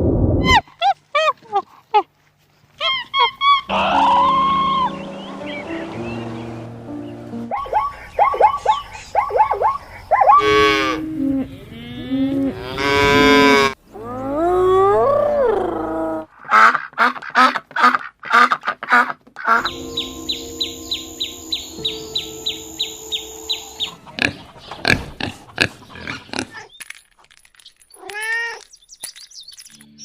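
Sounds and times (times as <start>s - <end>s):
background music: 3.7s - 8.8s, 19.6s - 25.3s
cattle mooing: 10.4s - 13.8s.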